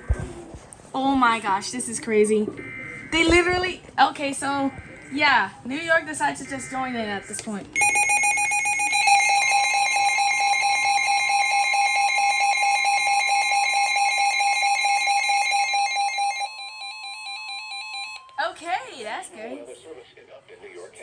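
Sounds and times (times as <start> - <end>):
steady electronic alarm tone: 7.8 - 18.7.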